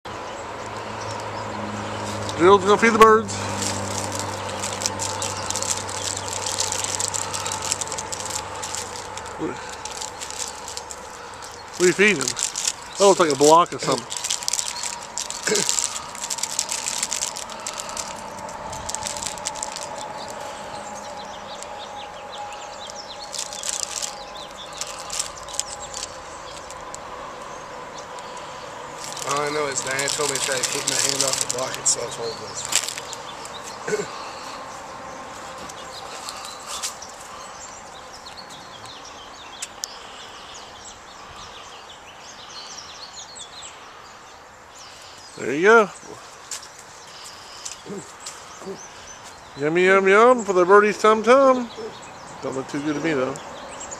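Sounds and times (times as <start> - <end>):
small birds chirping: 0.1 - 53.9
steady outdoor hiss: 0.1 - 53.9
rustling scraping and clicking: 2.0 - 21.8, 22.8 - 34.6, 35.3 - 39.0, 46.4 - 48.5.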